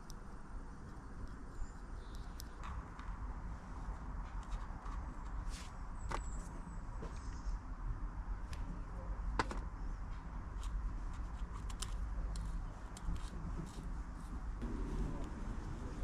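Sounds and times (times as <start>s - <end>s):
small metallic clicks and taps: 0.8s - 3.2s, 10.5s - 13.8s.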